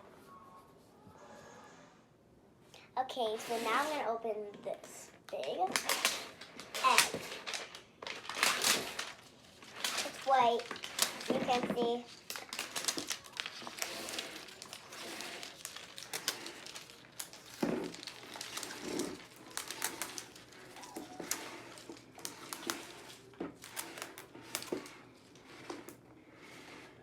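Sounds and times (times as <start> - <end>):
wrapper crinkling being torn: 5.3 - 26.0.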